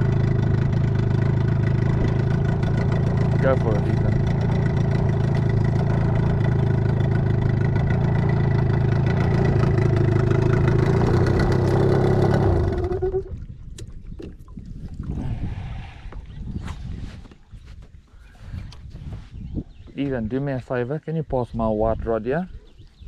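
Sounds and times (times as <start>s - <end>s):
outboard motor running: 0.0s - 16.3s.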